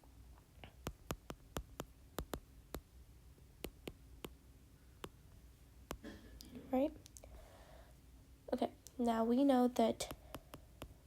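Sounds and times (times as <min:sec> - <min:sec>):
pen clicks and taps: 0:00.7 - 0:02.9, 0:03.6 - 0:04.4, 0:10.0 - 0:11.0.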